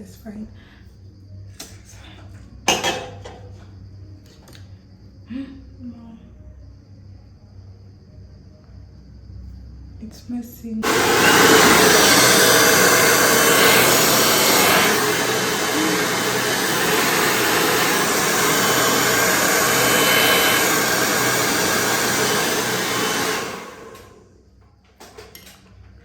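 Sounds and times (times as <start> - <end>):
hair dryer running: 10.8 - 24.3.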